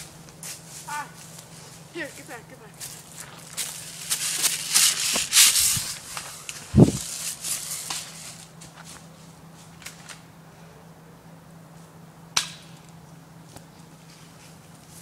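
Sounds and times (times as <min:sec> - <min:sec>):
rustling and movement: 0:00.0 - 0:10.3
steady low hum: 0:00.0 - 0:15.0
sharp crack: 0:07.8 - 0:08.2, 0:12.3 - 0:12.8.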